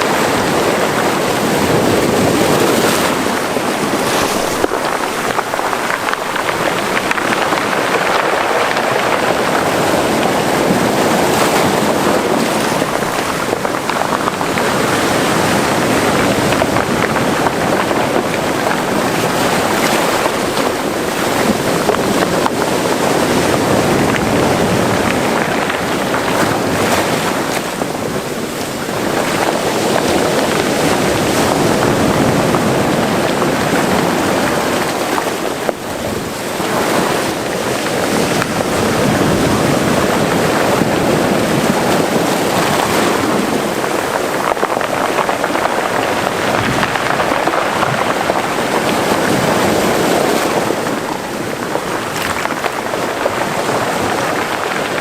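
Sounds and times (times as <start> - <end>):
waves surging against rocky shore: 0.0 - 55.0.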